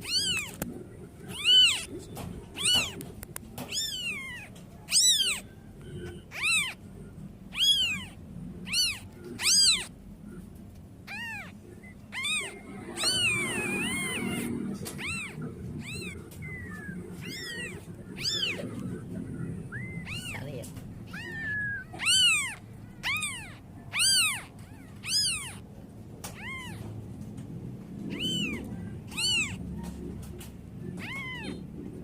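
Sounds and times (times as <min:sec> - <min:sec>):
kitten meowing: 0:00.0 - 0:00.7, 0:01.3 - 0:05.5, 0:06.2 - 0:06.8, 0:07.5 - 0:09.9, 0:11.0 - 0:19.1, 0:19.7 - 0:25.6, 0:26.2 - 0:26.9, 0:28.1 - 0:29.9, 0:30.9 - 0:31.6.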